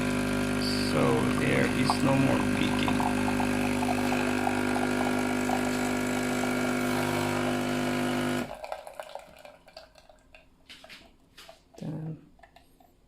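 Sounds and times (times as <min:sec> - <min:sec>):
coffee machine pump humming: 0:00.0 - 0:09.6.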